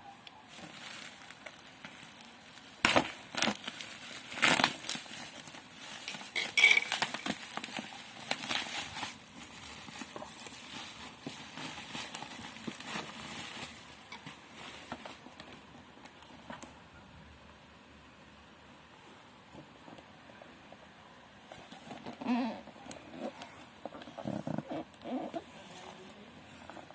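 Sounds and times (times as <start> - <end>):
packaging knocks and rustling: 0.6 - 15.7.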